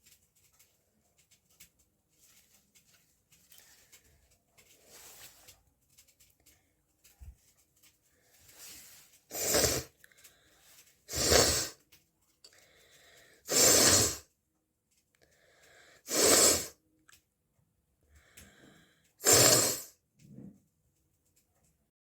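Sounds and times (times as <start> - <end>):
faint in-breath: 8.0 - 10.9, 12.5 - 13.6, 15.2 - 16.7, 18.1 - 19.9
person sneezing: 9.3 - 9.9, 11.1 - 11.8, 13.5 - 14.2, 16.1 - 16.8, 19.2 - 19.9.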